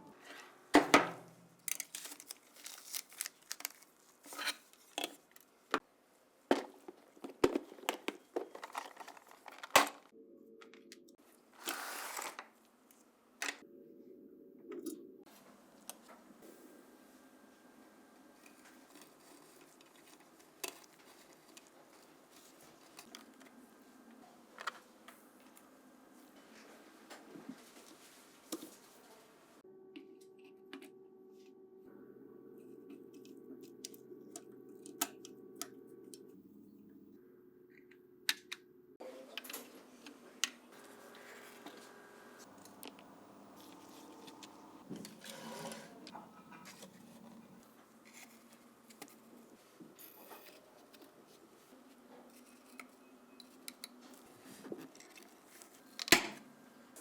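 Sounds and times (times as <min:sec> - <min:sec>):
light rubbing or scraping: 0:43.5 - 0:48.6.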